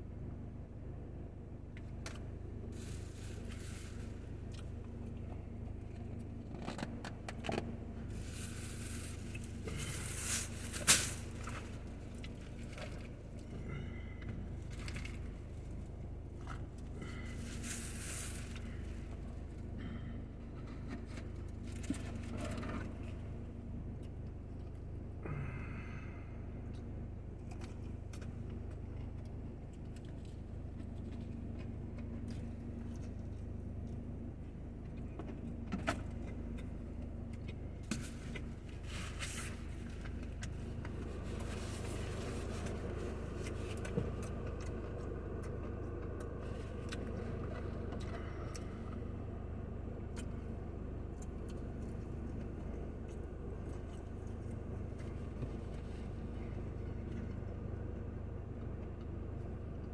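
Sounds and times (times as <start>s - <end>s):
steady low hum: 0.0s - 59.9s
crunching fried food: 8.1s - 13.9s.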